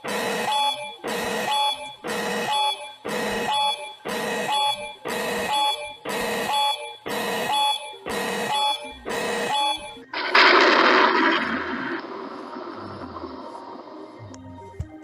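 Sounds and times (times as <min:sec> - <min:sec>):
emergency alert alarm tone pulsing: 0:00.0 - 0:14.0
loud rush of noise: 0:10.2 - 0:14.3.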